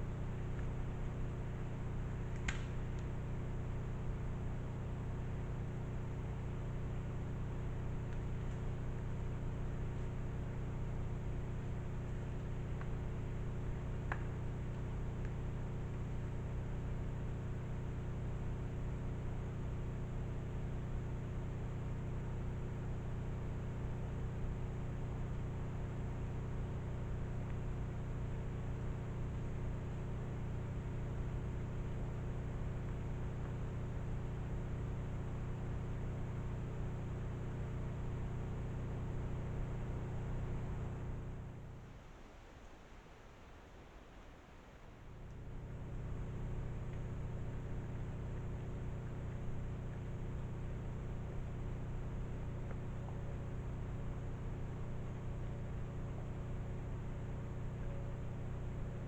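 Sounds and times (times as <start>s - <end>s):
electronic hum and hiss: 0.0s - 59.0s
faint click: 2.3s - 3.1s.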